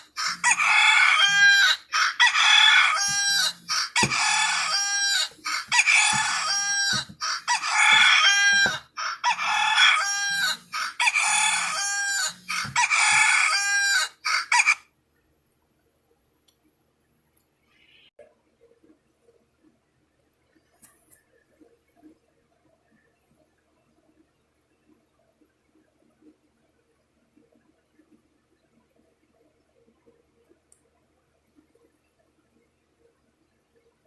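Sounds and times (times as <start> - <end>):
rooster crow phone alarm: 0.4 - 5.2, 5.8 - 14.8.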